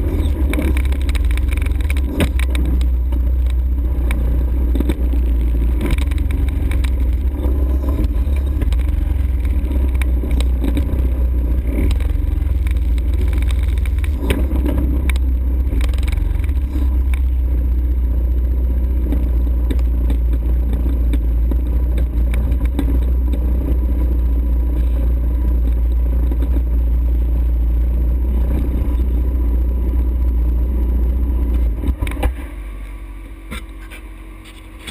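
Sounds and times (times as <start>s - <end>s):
knocks and clatter: 0.0s - 17.4s
atv engine rumbling: 0.0s - 34.9s.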